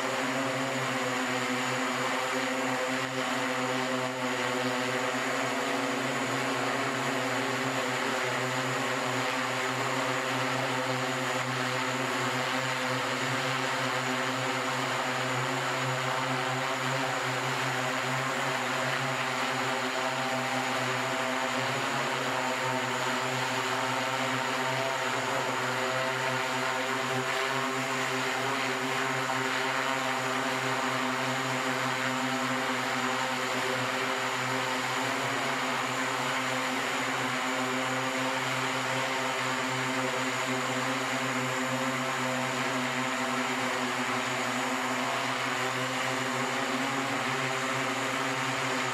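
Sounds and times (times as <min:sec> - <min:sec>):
multi-rotor propellers humming: 0:00.0 - 0:48.9.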